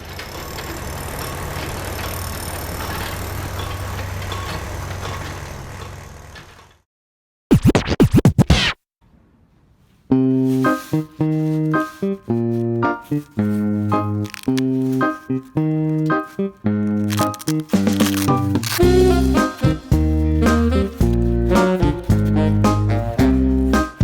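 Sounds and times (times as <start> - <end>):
record scratch effect: 7.5 - 8.8
keyboard music: 10.1 - 24.0.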